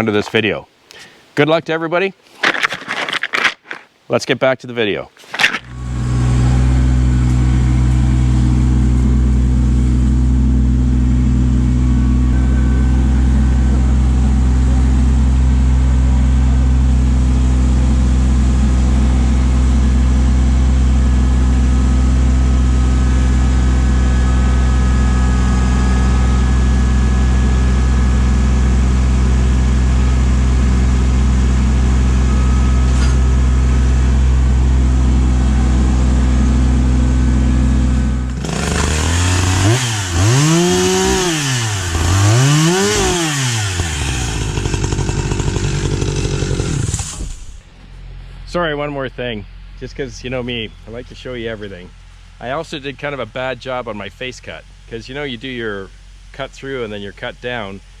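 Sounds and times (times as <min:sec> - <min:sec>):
tractor diesel engine running: 0:05.2 - 0:47.8.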